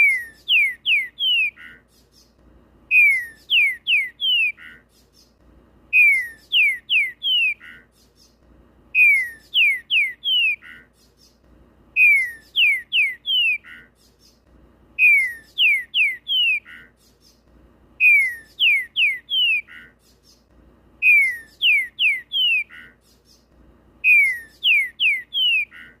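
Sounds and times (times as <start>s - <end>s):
bird singing falling whistles: 0.0s - 4.8s, 5.9s - 7.8s, 9.0s - 10.8s, 12.0s - 13.8s, 15.0s - 16.9s, 18.0s - 19.8s, 21.0s - 22.8s, 24.0s - 25.9s.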